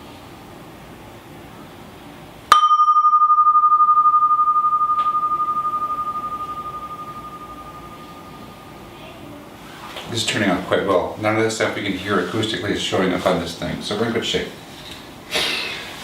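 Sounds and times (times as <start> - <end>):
struck vessel ringing: 2.5 - 9.0.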